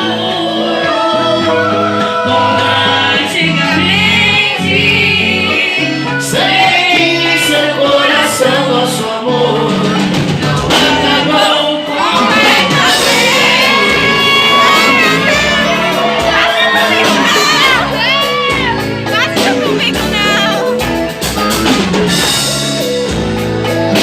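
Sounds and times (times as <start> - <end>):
person singing: 0.0 - 20.8
live band music: 0.0 - 24.0
drum or cymbal hits: 12.2 - 24.0.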